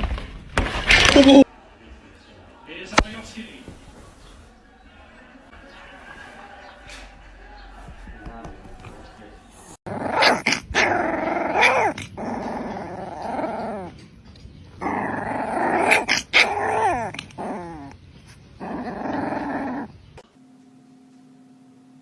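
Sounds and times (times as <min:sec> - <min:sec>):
dog growling: 0:09.8 - 0:14.0, 0:14.8 - 0:20.2.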